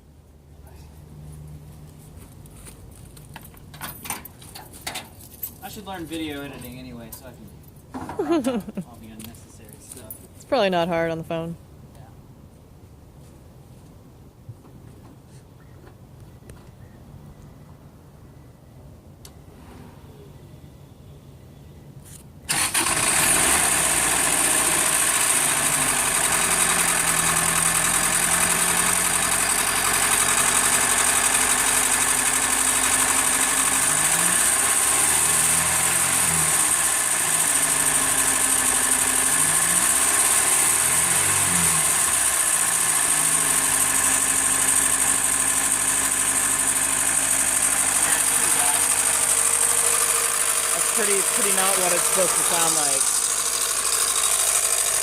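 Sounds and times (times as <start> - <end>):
car engine knocking: 24.0 - 55.0.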